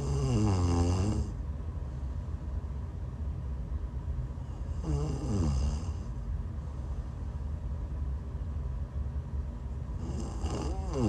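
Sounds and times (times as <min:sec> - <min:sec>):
woman snoring: 0:00.0 - 0:01.4, 0:04.6 - 0:06.1, 0:10.0 - 0:11.0
steady low rumble: 0:01.2 - 0:04.9, 0:05.8 - 0:11.0.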